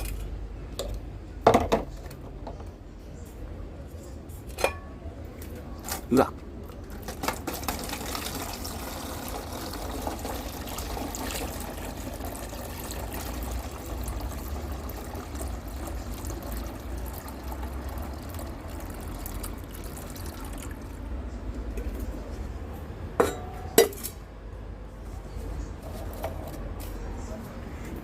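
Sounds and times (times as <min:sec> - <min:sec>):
water pouring and trickling: 0:07.1 - 0:21.0.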